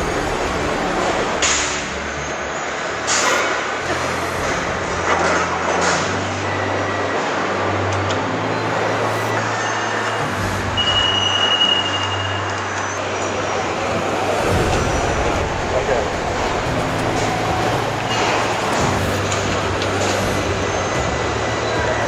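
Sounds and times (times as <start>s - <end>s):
machinery humming: 0.0s - 22.0s
hissing air bursts: 13.0s - 20.5s.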